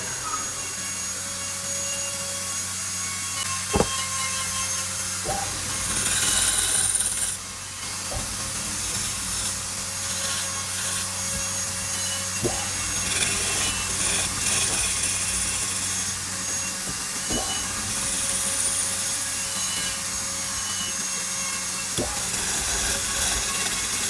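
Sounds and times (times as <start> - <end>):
brief knocks: 3.7 - 4.0
tool scraping turning wood: 3.7 - 4.2.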